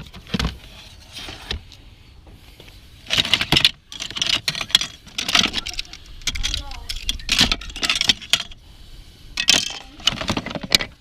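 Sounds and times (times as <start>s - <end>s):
small metal objects jingling: 3.9s - 8.6s.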